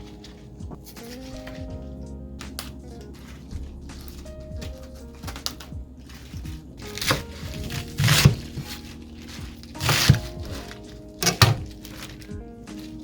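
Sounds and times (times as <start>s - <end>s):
background music with steady tones: 0.0s - 13.0s
cooking knocks and scrapes: 2.4s - 12.2s.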